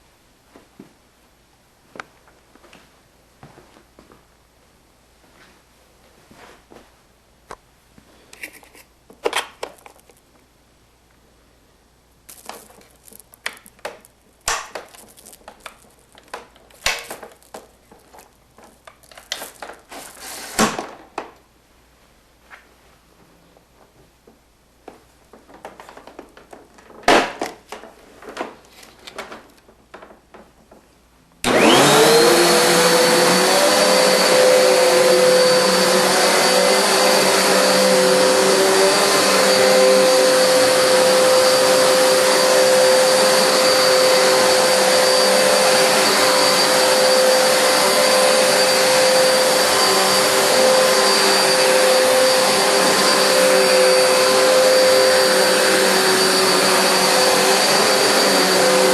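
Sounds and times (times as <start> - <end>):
vacuum cleaner motor whining: 31.4 - 58.9.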